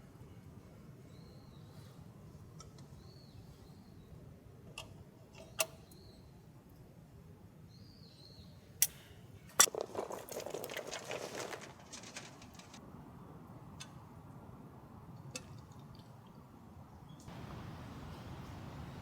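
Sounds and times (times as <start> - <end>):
rustling and clattering: 9.6 - 12.8.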